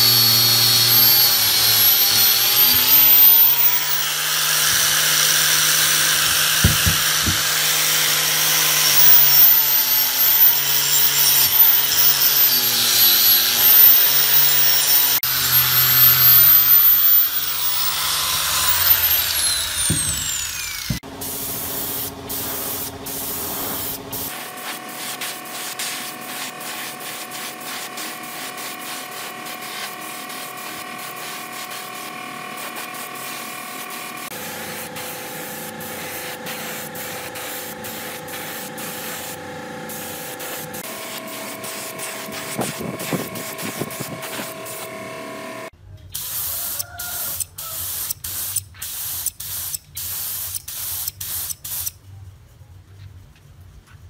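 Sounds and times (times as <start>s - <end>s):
motor whine: 0.0s - 7.6s, 8.7s - 22.2s, 40.6s - 45.7s
spray hissing: 0.0s - 7.7s, 16.7s - 32.0s, 34.7s - 45.0s.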